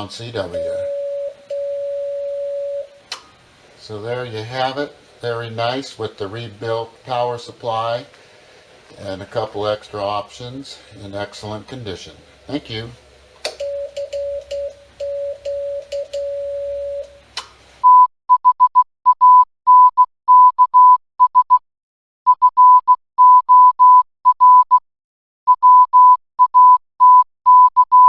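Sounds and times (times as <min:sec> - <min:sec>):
morse code tones: 0:00.0 - 0:03.1, 0:13.5 - 0:21.5, 0:22.4 - 0:24.7, 0:25.5 - 0:28.0
faint hum: 0:00.0 - 0:17.8
click: 0:03.1 - 0:03.3.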